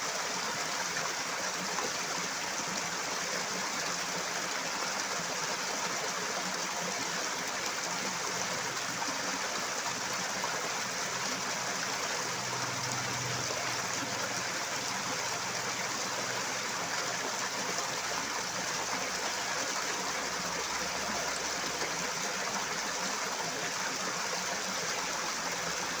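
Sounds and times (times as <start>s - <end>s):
running water rushing: 0.0s - 26.0s.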